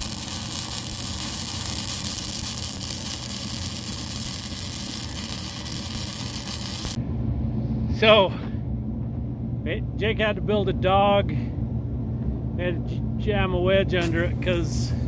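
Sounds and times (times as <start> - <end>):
arc welding crackling hiss: 0.0 - 7.0, 14.0 - 15.0
low engine hum: 6.8 - 15.0.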